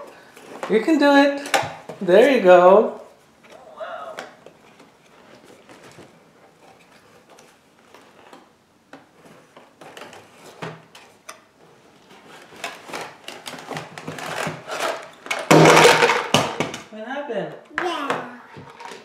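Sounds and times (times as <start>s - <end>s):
toy packaging crinkling and rustling: 12.0s - 16.4s
toy falling with clatter: 12.6s - 16.9s.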